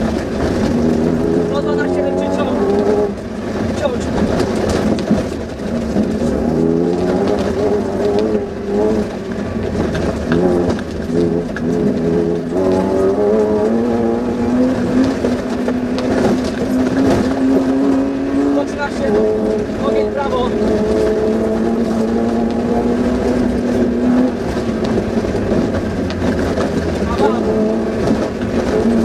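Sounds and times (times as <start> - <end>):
car engine revving through gears: 0.0 - 29.0
knocks from rough ground: 2.7 - 13.8.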